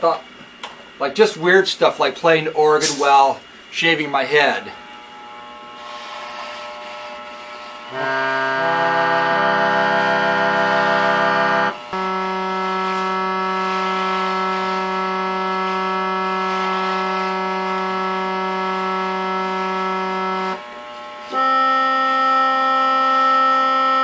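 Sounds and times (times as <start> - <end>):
organ holding a reedy note: 5.5 - 24.0.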